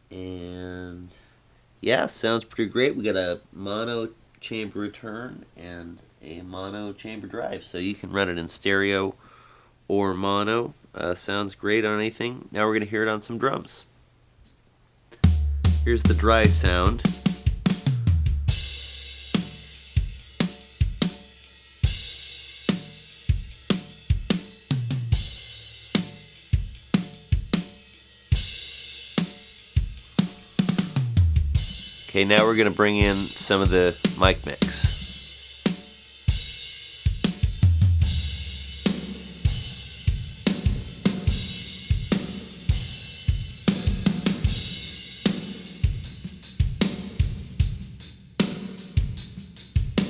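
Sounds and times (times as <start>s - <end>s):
drum kit playing groove: 15.2s - 50.0s
cymbal crashes: 38.0s - 45.8s.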